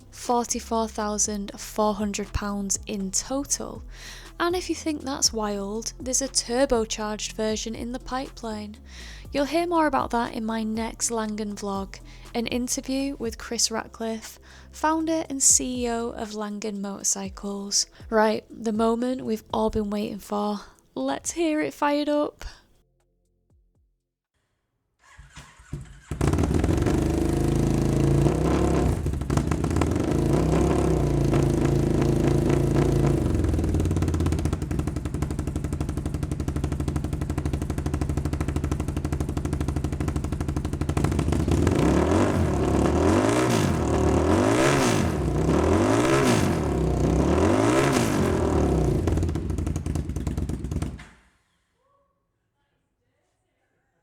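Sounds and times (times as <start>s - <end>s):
two-stroke motorcycle engine revving: 0.0s - 13.3s, 25.1s - 51.1s.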